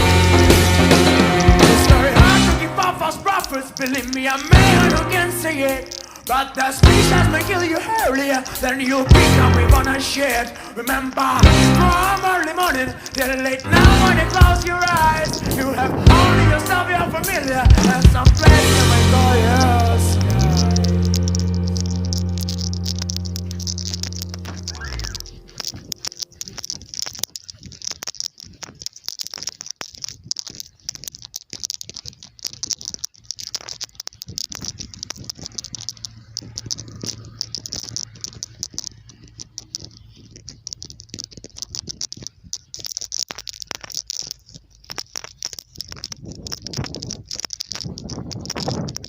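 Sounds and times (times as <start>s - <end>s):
snow crackling against microphone: 0.0s - 49.0s
low hum: 17.7s - 26.7s.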